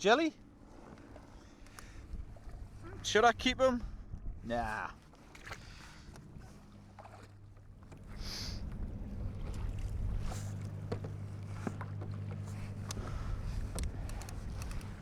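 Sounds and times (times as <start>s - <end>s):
water lapping against hull: 0.0s - 15.0s
trolling motor humming: 5.1s - 15.0s.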